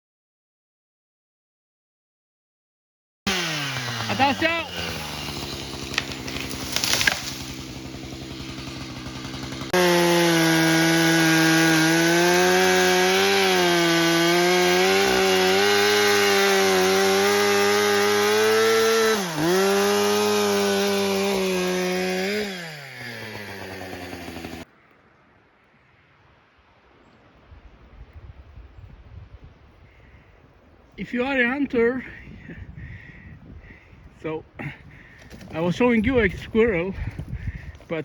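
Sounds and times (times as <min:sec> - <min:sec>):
chainsaw revving and idling: 0:03.3 - 0:24.7.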